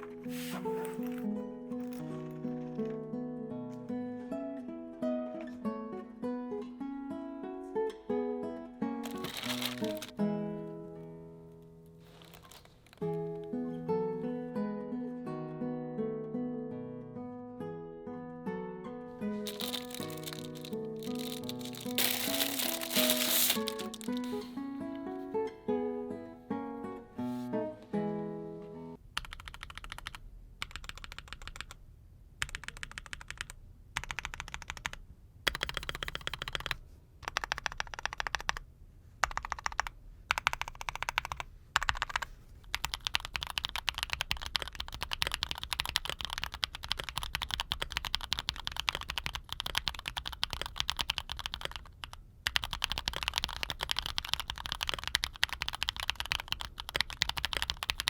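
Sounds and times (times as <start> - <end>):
music: 0.0 - 12.0, 13.0 - 29.0
mechanical keyboard typing: 9.0 - 10.1, 19.4 - 24.5, 29.2 - 31.8, 32.4 - 38.6, 39.2 - 58.0.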